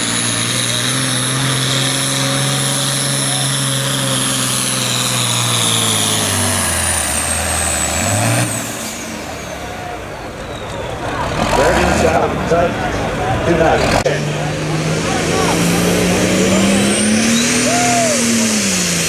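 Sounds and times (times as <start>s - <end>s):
diesel engine running under load: 0.0s - 19.0s
high turbo whistle: 16.4s - 18.5s.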